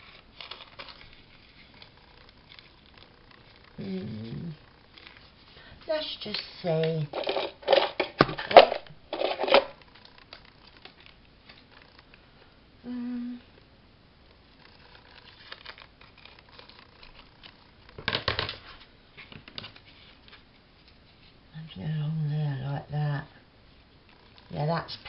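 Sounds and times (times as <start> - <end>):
paper crinkling: 0.0 - 12.2, 14.3 - 21.4
small handling sounds: 0.0 - 12.6, 13.5 - 21.5
person humming: 3.8 - 4.6, 12.8 - 13.6.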